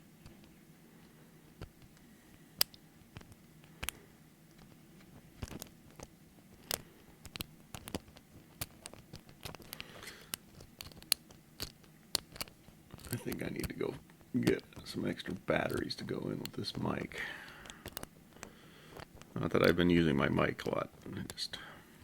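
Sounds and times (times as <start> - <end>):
lock pick clicking and scraping: 5.4 - 13.7, 15.7 - 19.3.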